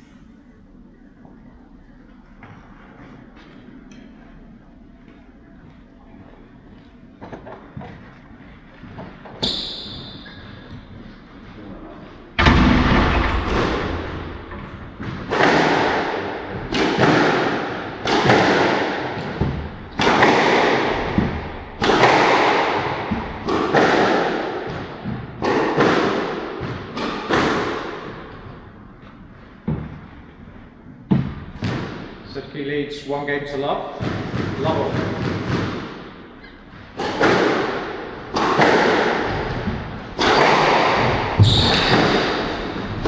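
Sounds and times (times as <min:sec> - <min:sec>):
squash ball hitting racket and wall: 0:12.4 - 0:32.2, 0:34.0 - 0:43.0.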